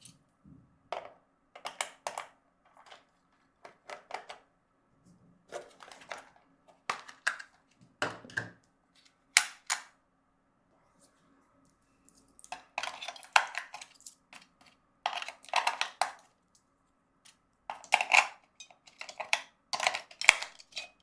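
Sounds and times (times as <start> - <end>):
plastic toy parts clicking: 15.1 - 16.3, 17.7 - 20.9.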